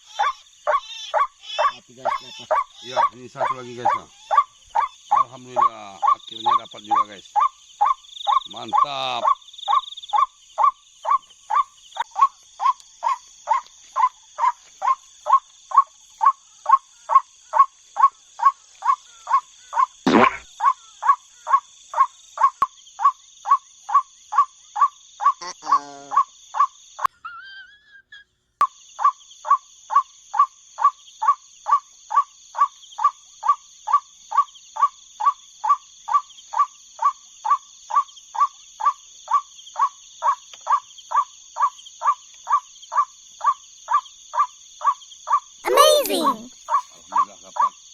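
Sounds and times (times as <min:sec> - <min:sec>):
croaking bird call: 0:00.0 - 0:28.2, 0:29.0 - 0:47.8
night insects droning: 0:00.0 - 0:45.6, 0:46.5 - 0:47.9
sharp knock: 0:20.1 - 0:20.5.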